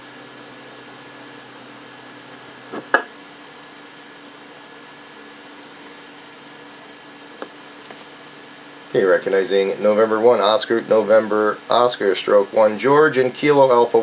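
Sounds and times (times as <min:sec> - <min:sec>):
radio hiss and hum: 0:00.0 - 0:03.1, 0:08.8 - 0:14.0.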